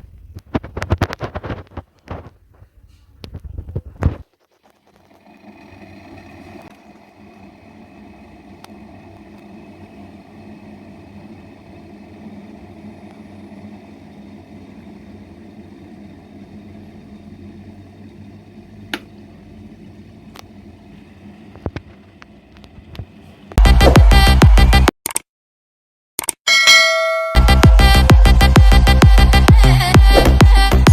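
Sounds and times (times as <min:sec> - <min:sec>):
electric kettle heating water: 0:03.2 - 0:24.9, 0:26.7 - 0:30.9
sharp clicks: 0:24.8 - 0:25.2, 0:26.2 - 0:26.4.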